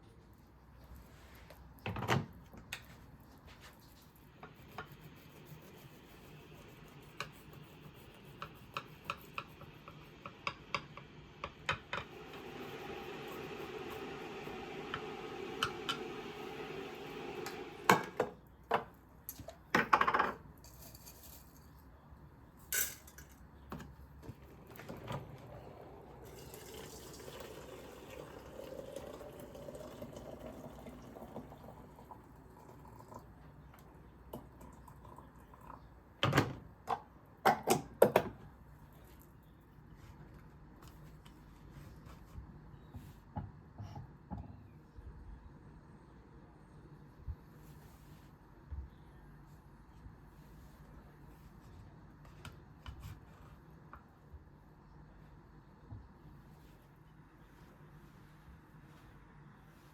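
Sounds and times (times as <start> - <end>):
tap running: 9.9 - 18.4.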